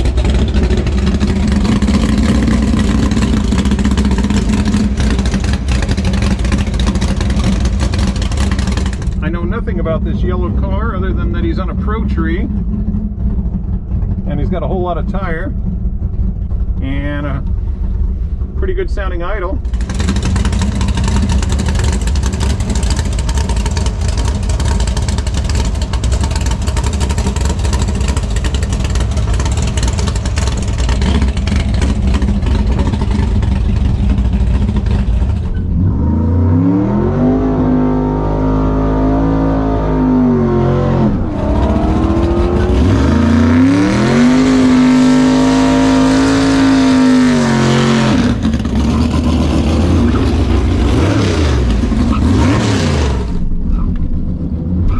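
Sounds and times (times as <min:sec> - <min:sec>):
car engine lumpy idle and revving: 0:00.0 - 0:54.9.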